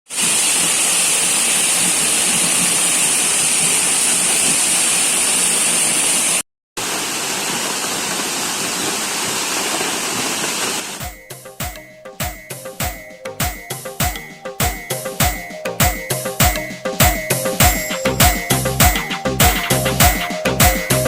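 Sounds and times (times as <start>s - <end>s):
waterfall roaring: 0.1s - 11.0s.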